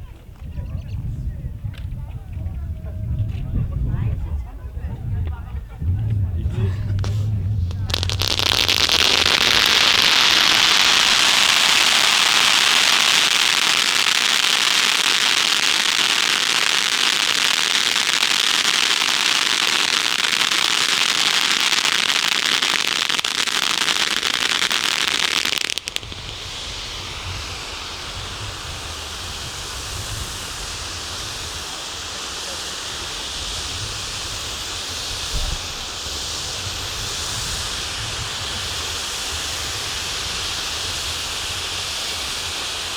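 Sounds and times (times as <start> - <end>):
low rumble: 2.5 - 11.7
firework fountains hissing: 4.8 - 42.9.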